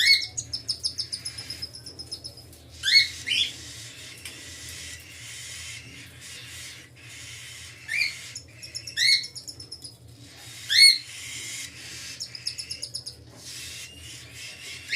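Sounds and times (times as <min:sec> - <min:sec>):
ticking chirps: 0:00.0 - 0:02.6.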